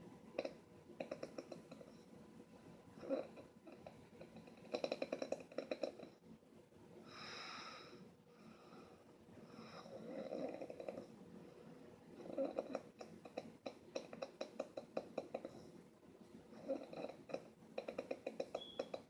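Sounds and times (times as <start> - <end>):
person snoring: 3.0 - 6.2, 9.7 - 11.1, 12.2 - 15.6, 16.6 - 18.6.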